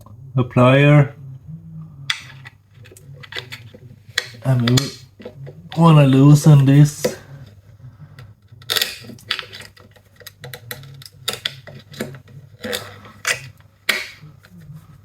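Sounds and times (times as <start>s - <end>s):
faint low hum: 0.0s - 15.0s
pliers clicking and scraping on metal: 2.1s - 5.9s, 8.6s - 14.6s.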